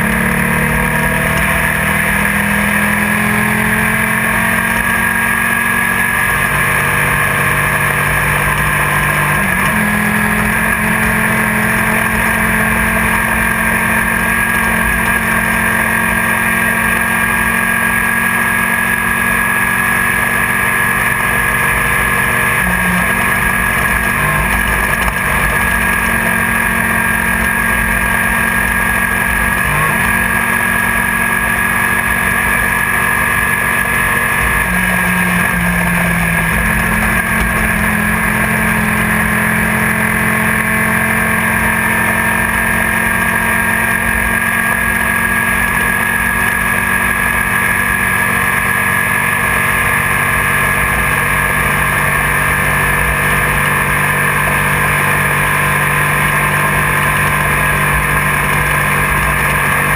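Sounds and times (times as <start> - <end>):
high whine: 0.0 - 59.9
race car engine at high revs: 0.0 - 59.9.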